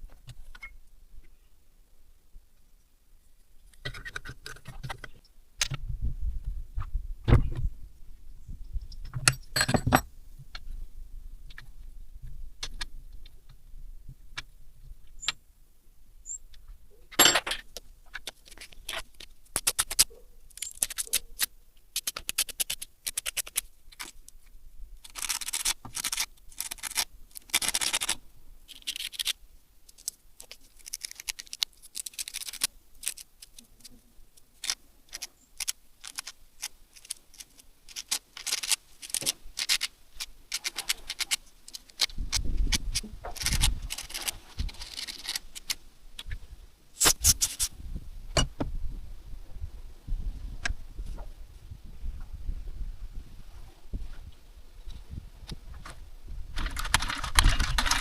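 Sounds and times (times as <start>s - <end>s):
metal parts and tools clinking: 9.2s - 10.1s, 17.1s - 22.5s.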